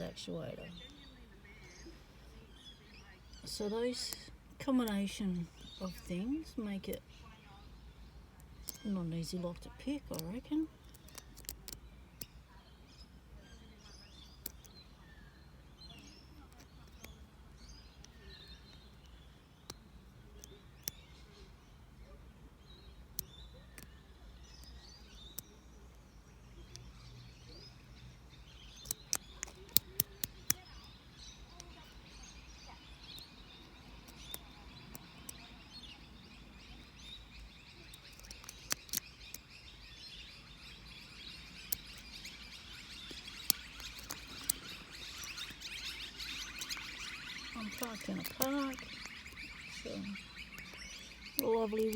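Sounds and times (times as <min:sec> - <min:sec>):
birds chirping: 0:00.0 - 0:51.9
lock picks clicking in padlock: 0:10.1 - 0:12.4, 0:28.7 - 0:30.8, 0:37.9 - 0:39.4, 0:43.0 - 0:44.6.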